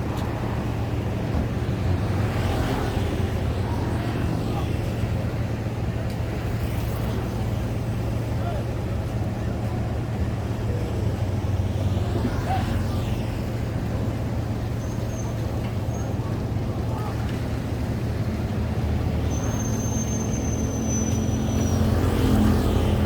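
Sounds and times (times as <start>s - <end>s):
low drone of engines: 0.0s - 23.0s
faint indistinct voices: 14.8s - 18.0s.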